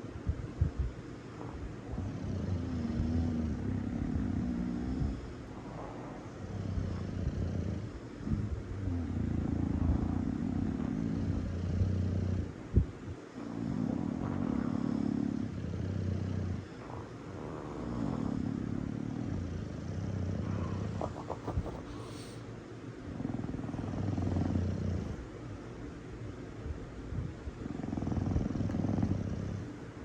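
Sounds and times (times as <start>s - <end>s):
dogs snoring: 0.0s - 26.0s, 26.6s - 30.0s
hissing breath: 20.6s - 22.6s.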